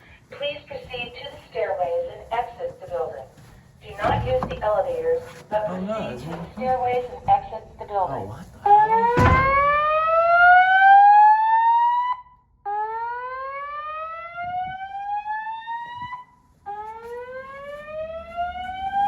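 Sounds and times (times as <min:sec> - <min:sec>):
fire alarm whoop tone: 0:08.7 - 0:16.3.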